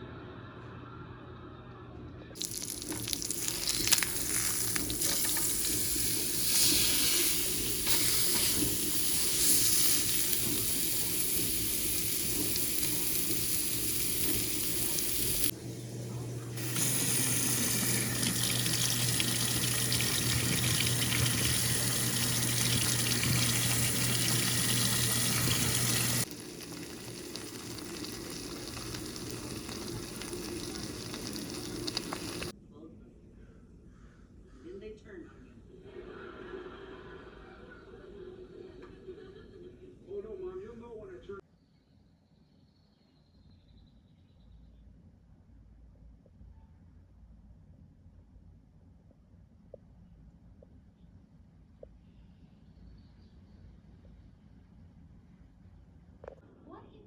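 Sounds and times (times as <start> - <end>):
water tap running into sink: 2.4 - 32.5.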